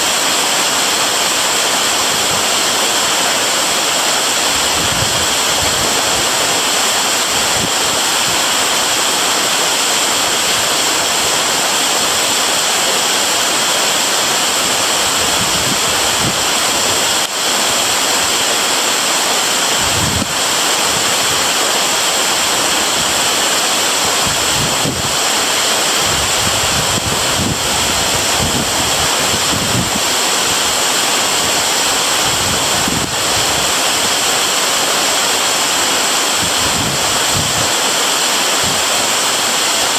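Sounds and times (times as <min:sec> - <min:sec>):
waterfall rushing: 0:00.0 - 0:39.9
wind thumps on microphone: 0:04.6 - 0:06.3, 0:15.1 - 0:16.4, 0:19.8 - 0:20.3, 0:26.0 - 0:30.1.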